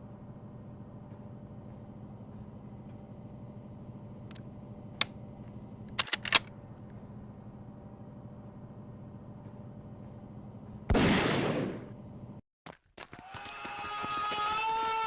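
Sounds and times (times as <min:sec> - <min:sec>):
sharp clicks: 0:05.9 - 0:06.5.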